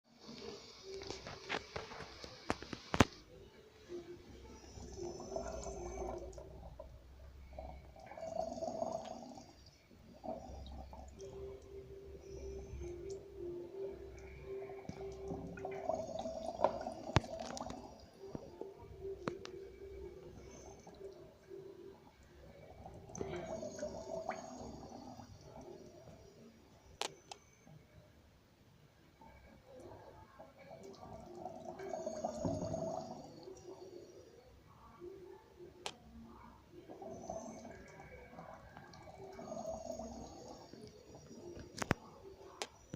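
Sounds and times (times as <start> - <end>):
mechanical respirator breathing: 3.9 - 27.8.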